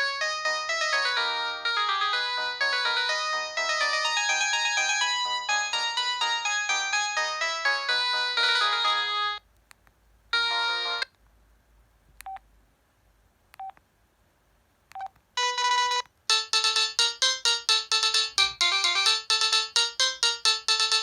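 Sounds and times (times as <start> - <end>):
phone ringtone melody: 0.0 - 9.4, 10.4 - 11.1, 15.4 - 21.0.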